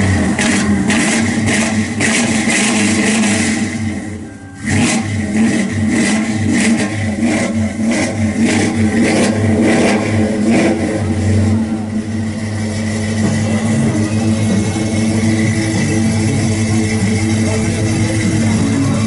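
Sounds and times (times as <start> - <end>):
car engine revving: 0.0 - 19.0.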